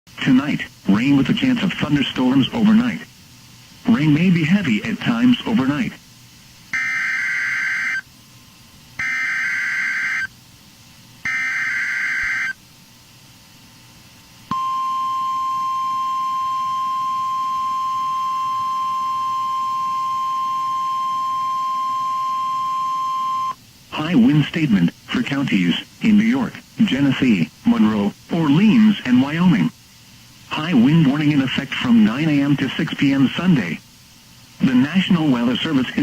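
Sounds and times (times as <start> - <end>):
steady warning alarm tone: 6.7 - 8.1, 9.0 - 10.4, 11.2 - 12.6, 14.5 - 23.6.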